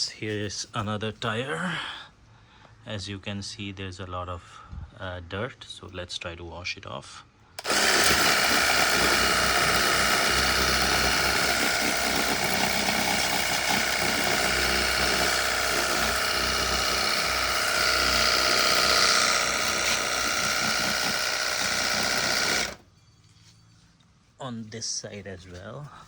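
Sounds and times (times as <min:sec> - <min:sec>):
pressure washer pump whining: 0:07.6 - 0:22.9.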